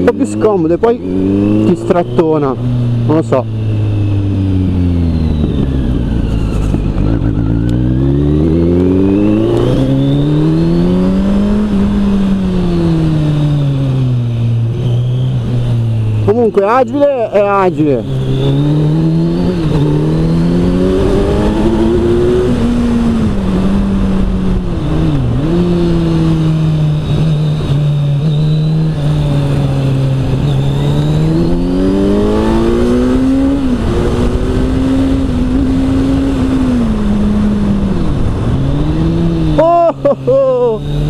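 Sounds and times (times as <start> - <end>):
motorcycle engine accelerating: 0.0 - 41.0.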